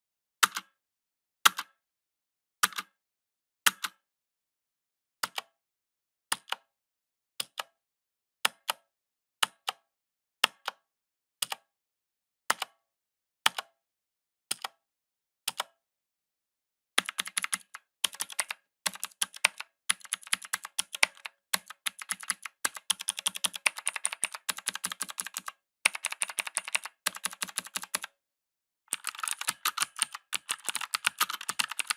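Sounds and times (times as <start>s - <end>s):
mechanical keyboard keys clicking: 17.0s - 28.1s, 28.9s - 31.9s.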